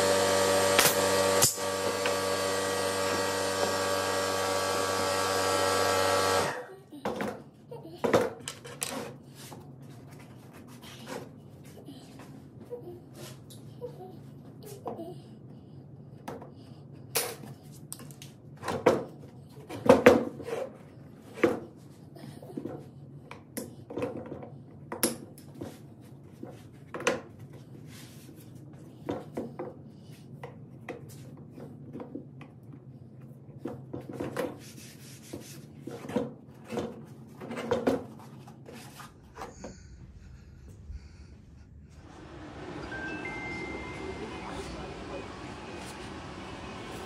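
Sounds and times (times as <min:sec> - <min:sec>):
steady low hum: 0:36.5 - 0:47.0.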